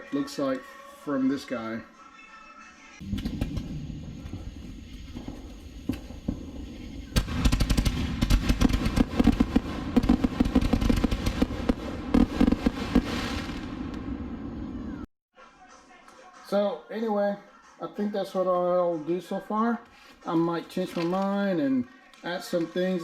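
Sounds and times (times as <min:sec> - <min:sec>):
firework shells launching: 0:03.0 - 0:15.0
firework bursting cracks: 0:03.0 - 0:15.1
firework crackle and hiss: 0:03.0 - 0:15.1.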